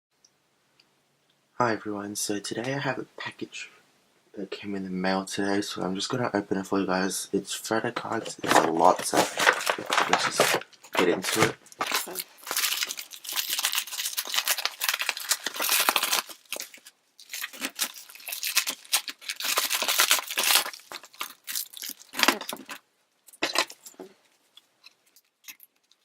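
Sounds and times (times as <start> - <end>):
package tearing and crinkling: 8.3 - 24.0, 24.6 - 26.0.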